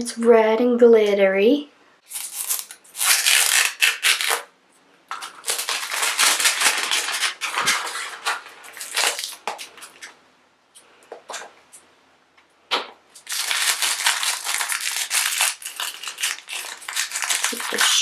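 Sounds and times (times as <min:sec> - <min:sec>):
plastic wrapping crinkling: 0:02.0 - 0:04.5, 0:05.1 - 0:10.2, 0:13.1 - 0:18.0.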